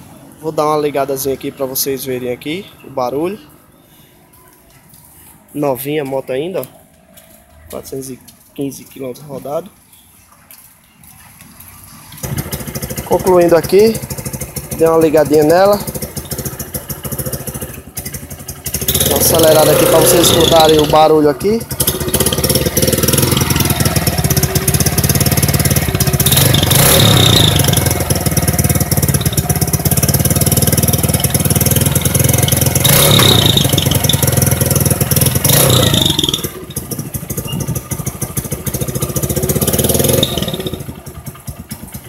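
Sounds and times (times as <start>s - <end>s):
motorcycle engine revving: 12.0s - 42.0s.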